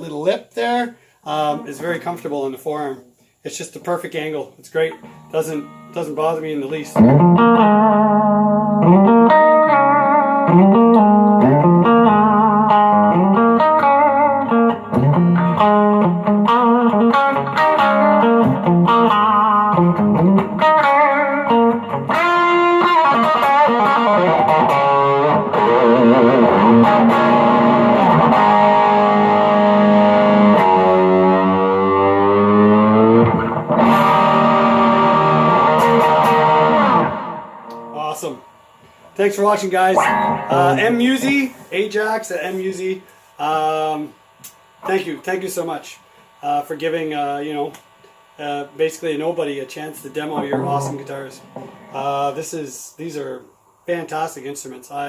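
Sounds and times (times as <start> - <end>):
electric guitar: 4.9 - 6.1, 6.8 - 39.2, 39.9 - 41.7, 50.2 - 52.4.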